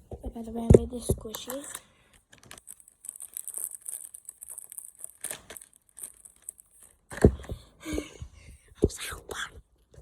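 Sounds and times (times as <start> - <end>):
squishy toy crinkly rustles: 1.0 - 7.2.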